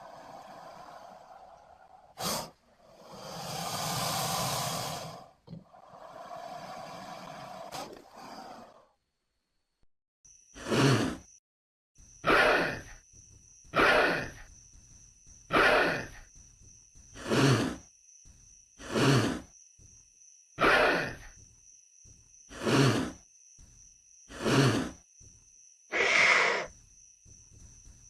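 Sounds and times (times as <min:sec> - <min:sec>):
creature rasping breaths: 0:00.0 - 0:09.0.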